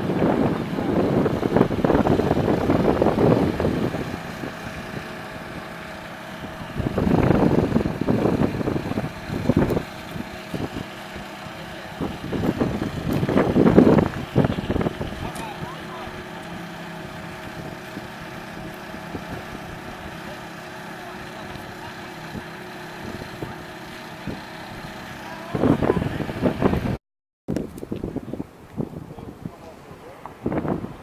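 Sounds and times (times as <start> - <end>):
wind noise on microphone: 0.0 - 20.3, 21.4 - 31.0
car exhaust accelerating: 0.0 - 27.0.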